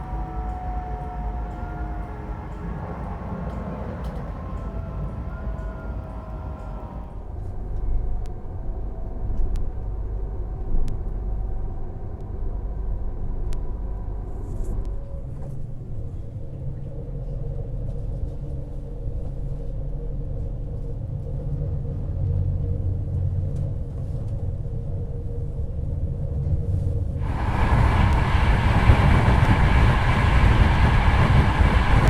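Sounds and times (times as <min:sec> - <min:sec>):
motor hum: 0:00.0 - 0:07.2
train rumble: 0:00.0 - 0:32.0.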